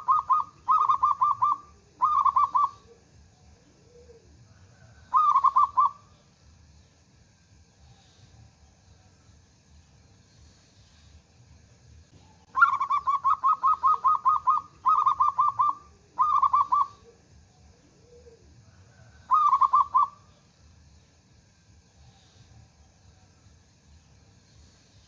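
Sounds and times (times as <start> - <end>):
dove cooing: 0.0 - 6.1, 12.2 - 20.3.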